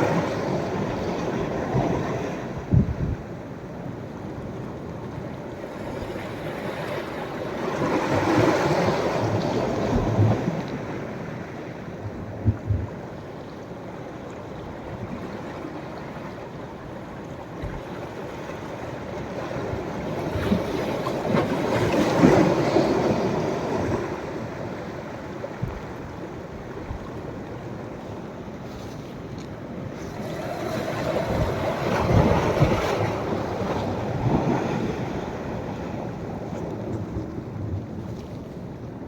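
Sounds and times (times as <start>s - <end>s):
sea waves washing onto beach: 0.0s - 39.0s
wave breaking: 29.9s - 36.2s.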